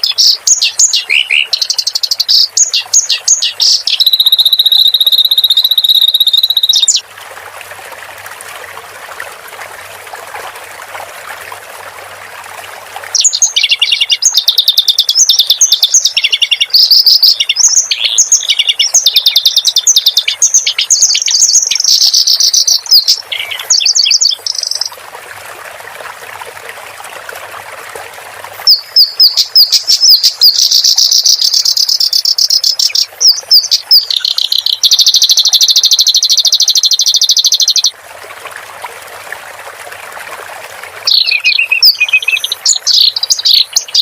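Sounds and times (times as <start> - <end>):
reed warbler chattering song: 0.0 - 7.0, 13.2 - 24.9, 28.6 - 37.9, 41.1 - 44.0
trickling water: 0.0 - 44.0.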